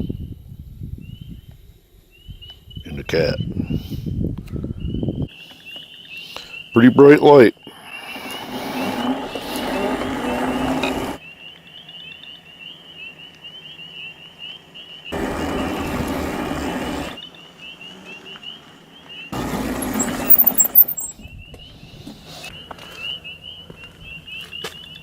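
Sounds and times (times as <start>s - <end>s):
frogs peeping: 11.2s - 15.2s, 17.2s - 19.3s
rough noise: 19.4s - 21.2s.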